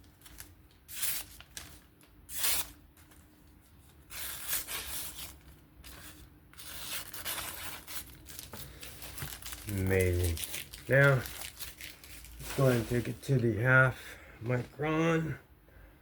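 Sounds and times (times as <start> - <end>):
knife slicing through paper: 0.9 - 2.8, 4.1 - 8.1.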